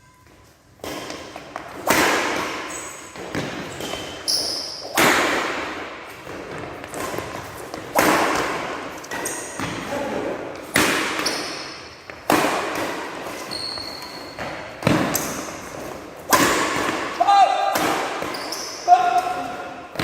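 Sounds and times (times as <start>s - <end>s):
racket hitting shuttlecock: 0.8s - 20.0s
short high squeaks: 4.2s - 4.9s, 13.4s - 14.4s, 18.3s - 18.9s.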